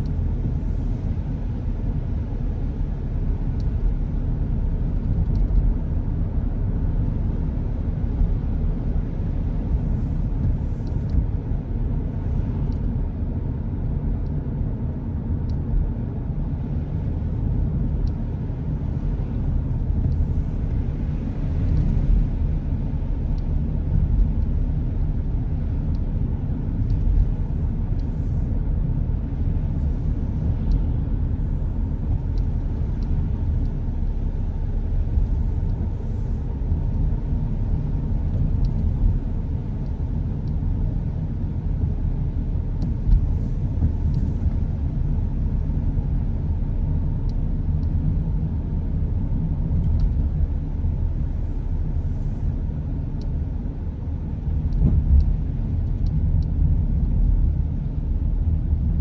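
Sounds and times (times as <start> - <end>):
car engine: 0.0 - 59.0
faint ticks: 54.7 - 57.4.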